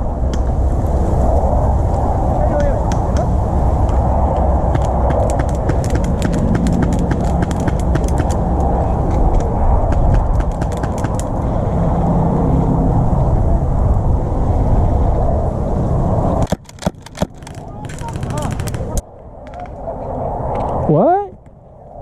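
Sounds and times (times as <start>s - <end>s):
steady low rumble: 0.0s - 22.0s
airsoft shots ticking: 4.8s - 8.6s, 9.9s - 11.3s.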